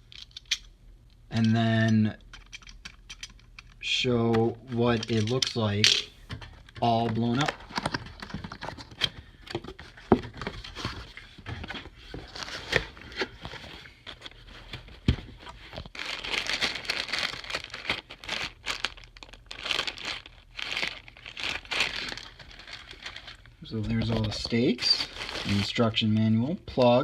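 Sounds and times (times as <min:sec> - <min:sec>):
crinkling packaging: 0:04.6 - 0:26.1.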